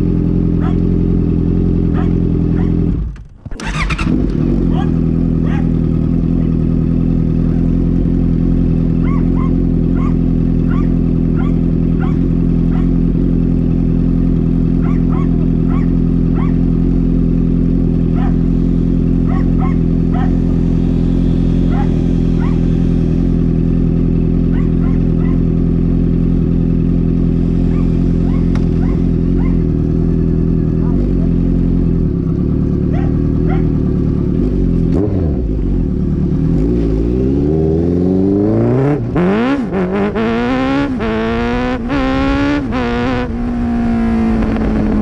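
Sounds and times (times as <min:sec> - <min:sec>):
motorcycle engine idling: 0:00.0 - 0:36.5.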